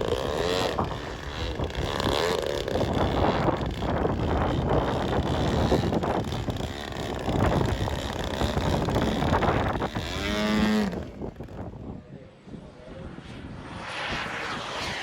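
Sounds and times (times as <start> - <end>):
small engine: 0.0 - 11.8
wind buffeting microphone: 0.0 - 15.0.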